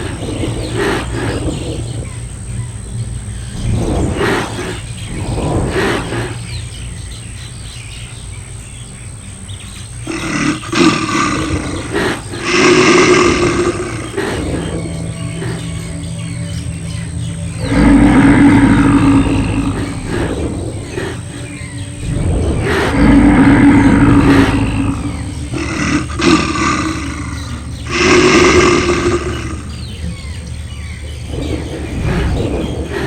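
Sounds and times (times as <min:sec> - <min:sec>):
large animal calling: 0:10.0 - 0:33.0.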